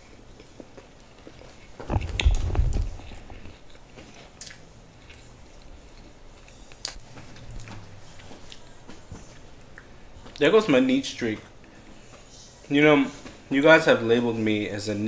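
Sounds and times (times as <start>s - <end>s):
biting into a sandwich: 0.3s - 10.4s
chewing: 0.3s - 10.4s.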